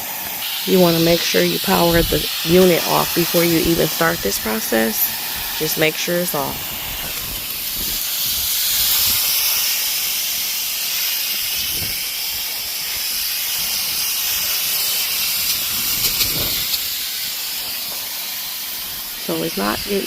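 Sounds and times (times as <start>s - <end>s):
sprayer hissing: 0.0s - 20.0s.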